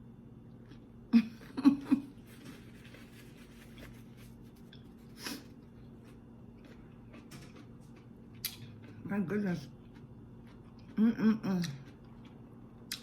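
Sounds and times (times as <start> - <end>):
low steady hum: 0.0 - 13.0
mouth clicks and chewing: 6.6 - 9.1, 11.6 - 13.0.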